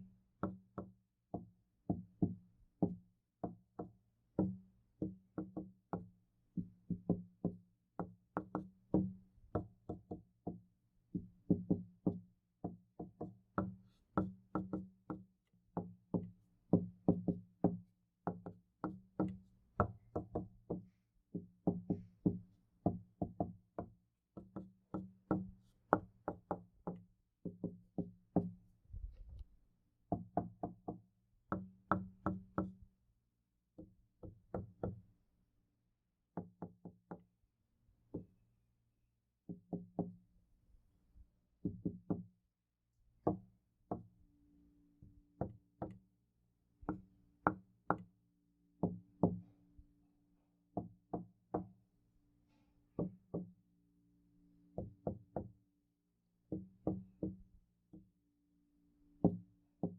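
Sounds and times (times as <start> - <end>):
knocking on a door: 15.8 - 29.1, 41.6 - 42.2.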